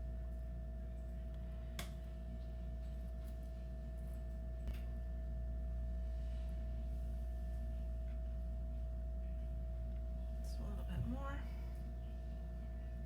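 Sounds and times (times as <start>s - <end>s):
low electrical hum: 0.0s - 13.0s.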